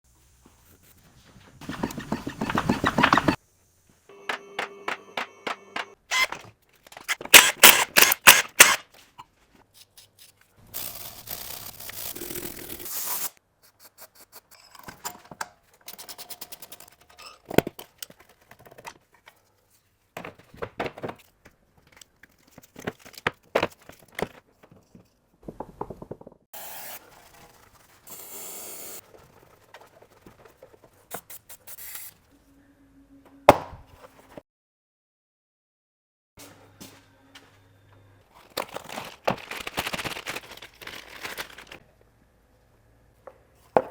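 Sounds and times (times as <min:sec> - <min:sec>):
knocks and scrapes: 0:00.5 - 0:03.4
rapid loud tool clicks: 0:07.1 - 0:08.8.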